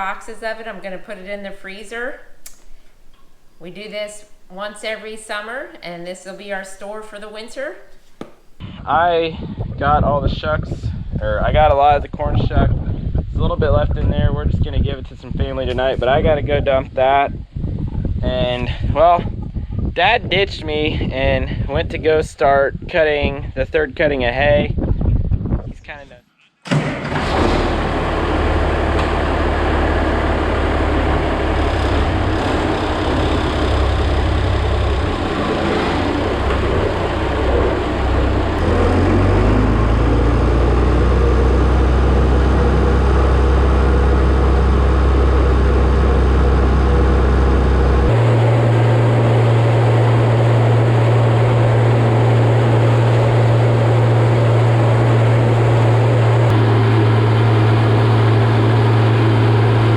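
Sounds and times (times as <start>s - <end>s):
vehicle engine running: 27.2s - 59.9s.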